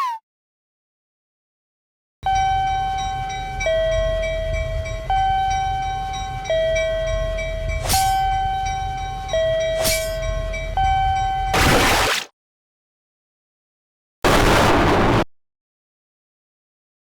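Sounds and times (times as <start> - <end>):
low train-like rumble: 2.2 - 11.5
two-tone crossing warning signal: 2.2 - 11.6
loud burst of noise: 14.2 - 15.3.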